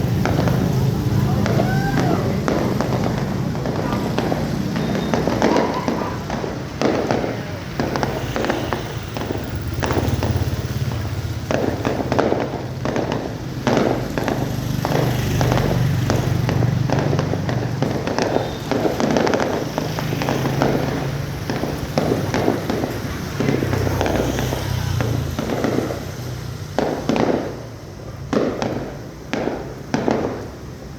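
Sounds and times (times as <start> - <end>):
fireworks booms and crackles: 0.0 - 30.9.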